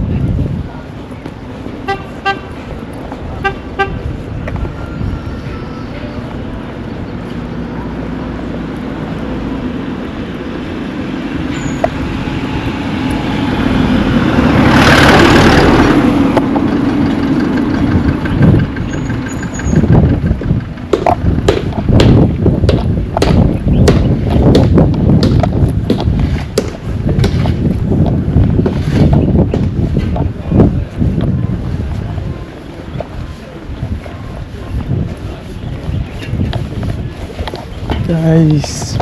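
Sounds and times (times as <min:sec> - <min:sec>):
wind buffeting microphone: 0:00.0 - 0:39.0
vehicle passing by: 0:06.1 - 0:21.5.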